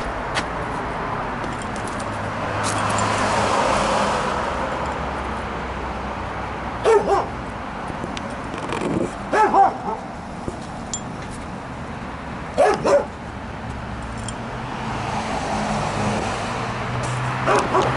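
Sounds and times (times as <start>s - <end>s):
dog barking: 6.8s - 7.4s, 9.3s - 10.1s, 12.6s - 13.2s, 17.4s - 17.9s.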